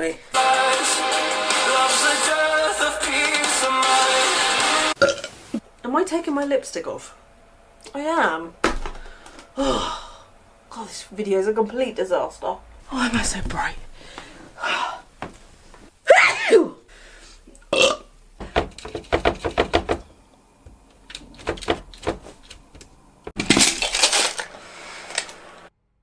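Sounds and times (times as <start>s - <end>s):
hissy burst of noise: 0.2s - 5.8s, 16.8s - 18.4s, 24.4s - 25.7s
woman burping: 5.0s - 5.3s, 9.6s - 10.1s, 17.5s - 18.2s.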